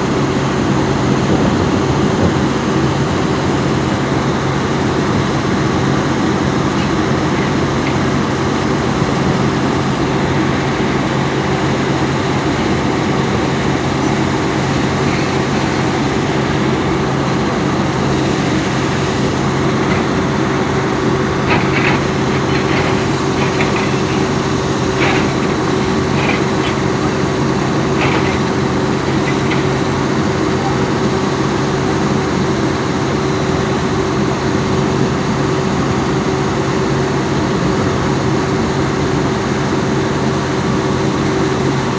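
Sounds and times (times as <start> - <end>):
excavator diesel engine running: 0.0 - 41.9
bucket clinking and scraping: 18.0 - 30.9.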